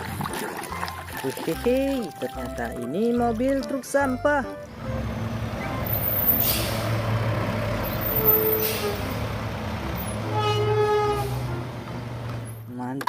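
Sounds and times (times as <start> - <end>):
truck engine running: 4.5 - 12.7
air brake hisses: 6.2 - 7.0, 8.4 - 9.0.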